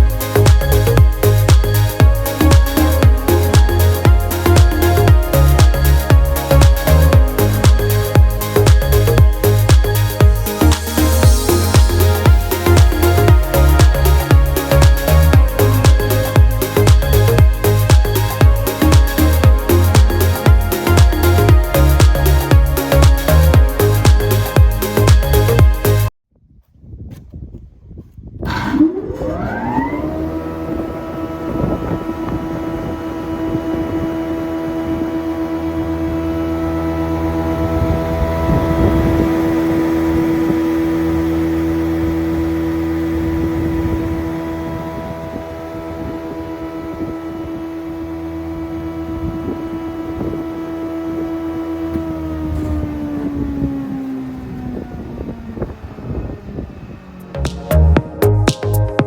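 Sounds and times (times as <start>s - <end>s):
jointer motor whining: 28.4s - 58.1s.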